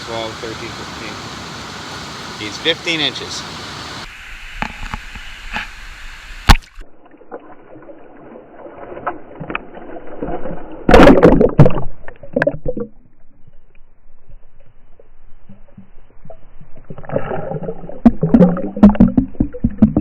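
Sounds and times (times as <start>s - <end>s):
water sloshing and splashing: 6.5s - 13.7s.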